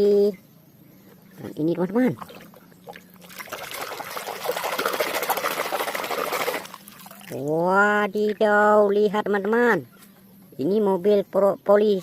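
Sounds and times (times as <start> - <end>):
water pouring and splashing: 2.2 - 7.6.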